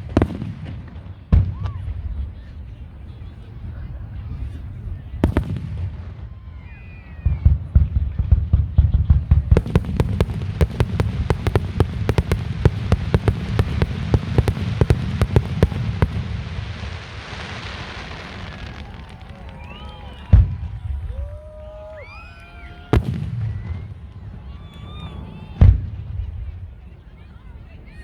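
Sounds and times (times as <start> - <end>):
fireworks bangs: 0.0 - 26.8
hissing crackle: 9.6 - 19.9.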